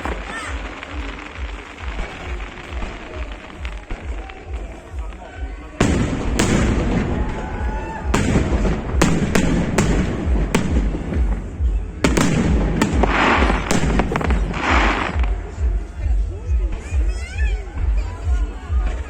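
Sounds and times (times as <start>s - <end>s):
fireworks banging: 0.0s - 19.0s
fireworks crackling and hissing: 0.0s - 19.0s.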